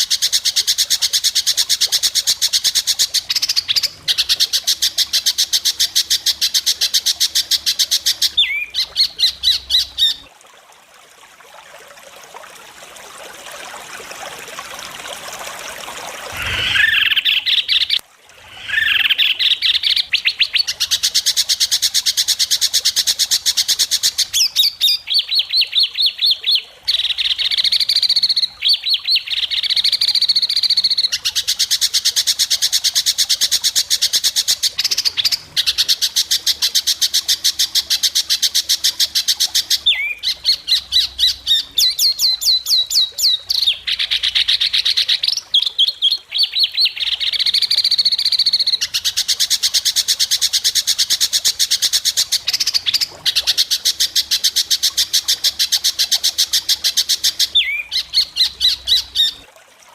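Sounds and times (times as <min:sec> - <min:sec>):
bird singing fast trills: 0:02.8 - 0:10.2, 0:16.4 - 0:18.0, 0:18.6 - 0:20.7, 0:39.2 - 0:49.2, 0:57.2 - 0:59.4.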